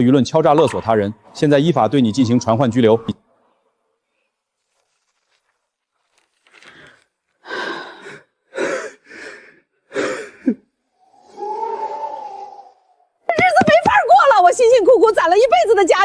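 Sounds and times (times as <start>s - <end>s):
person gasping breaths: 6.6s - 12.9s.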